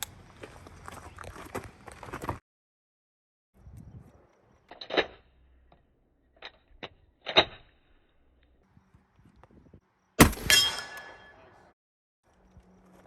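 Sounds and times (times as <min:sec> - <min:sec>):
gunshot bang ringing: 0:10.2 - 0:11.3.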